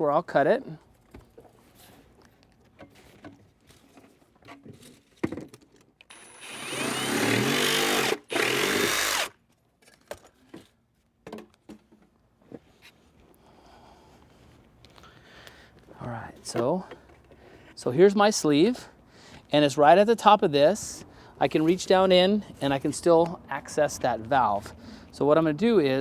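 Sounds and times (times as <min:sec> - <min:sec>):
power tool cutting plastic pipe: 0:06.1 - 0:09.4.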